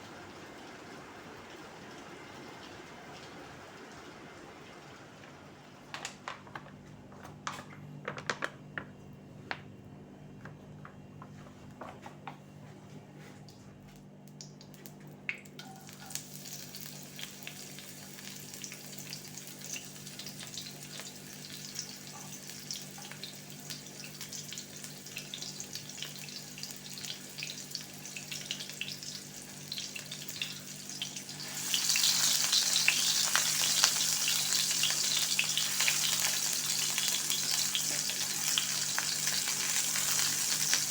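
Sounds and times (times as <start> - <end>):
food sizzling in a pan: 15.6 - 40.9.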